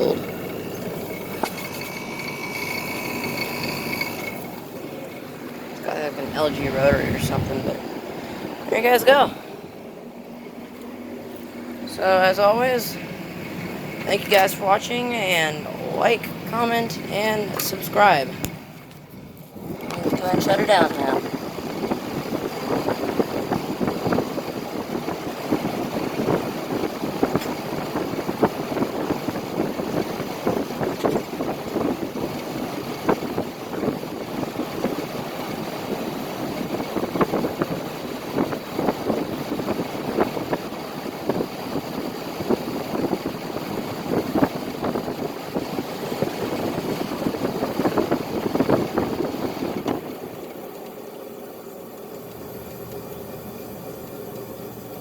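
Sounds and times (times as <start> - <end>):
irregular rattle: 0.0 - 7.4
heat pump compressor and fan: 0.0 - 55.0.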